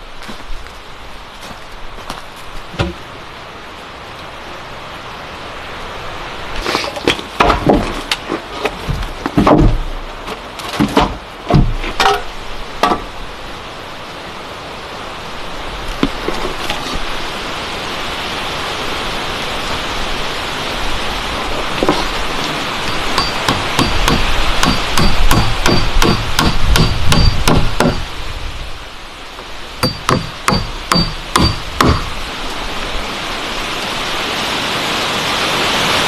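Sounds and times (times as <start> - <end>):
rain hiss: 0.0 - 7.4, 9.9 - 36.0
irregular knocks and thumps: 2.7 - 3.0, 6.9 - 10.1, 10.8 - 12.2.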